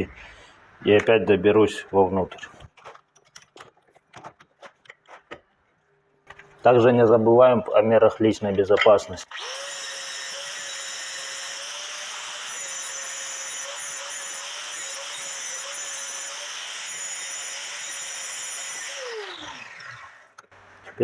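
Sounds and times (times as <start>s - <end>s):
angle grinder cutting metal: 9.2s - 20.4s
grinder spinning down: 9.2s - 20.4s.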